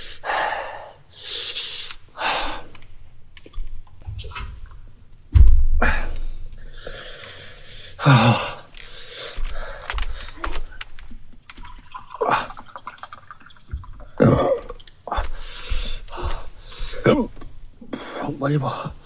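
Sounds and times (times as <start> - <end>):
man breathy hissing: 0.0 - 2.8, 5.8 - 10.4, 15.1 - 17.3
man burping or throat-clearing: 14.1 - 15.4.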